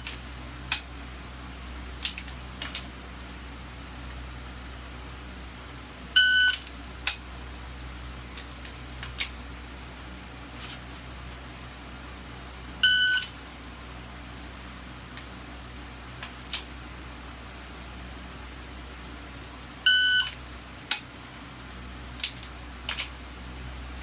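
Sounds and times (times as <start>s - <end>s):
shot timer beep: 12.8s - 13.3s.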